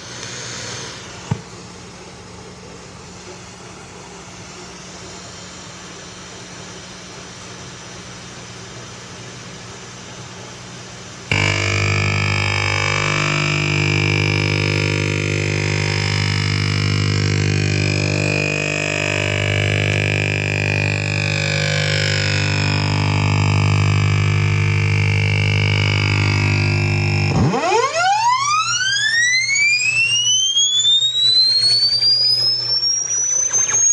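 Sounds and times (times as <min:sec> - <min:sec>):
loud droning radio tone: 0:11.3 - 0:33.9.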